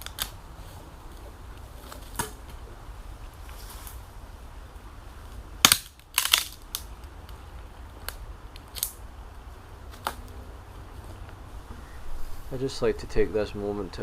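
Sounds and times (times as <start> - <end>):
dry sticks snapping: 0.0 - 0.4, 5.6 - 9.0.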